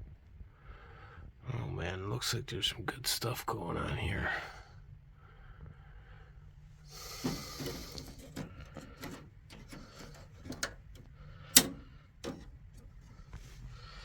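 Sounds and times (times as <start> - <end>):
computer parts clicking and knocking: 7.0 - 13.1.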